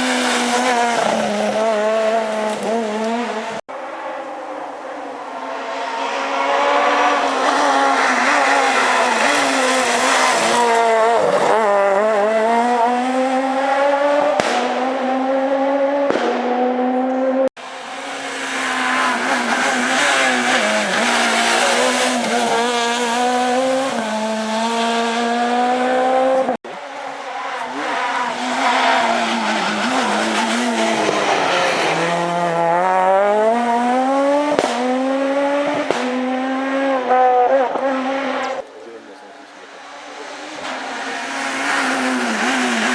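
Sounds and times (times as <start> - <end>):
rally car engine revving: 0.0 - 42.9.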